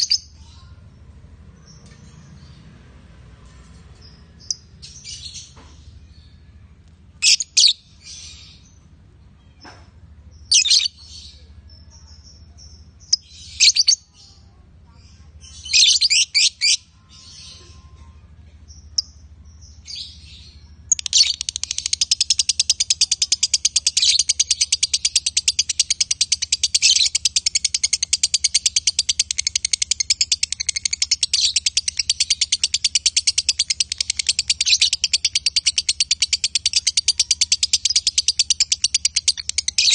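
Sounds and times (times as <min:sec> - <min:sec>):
lovebirds chirping: 0:00.0 - 0:00.9, 0:03.4 - 0:39.9
rapid chattering trill: 0:21.0 - 0:39.9.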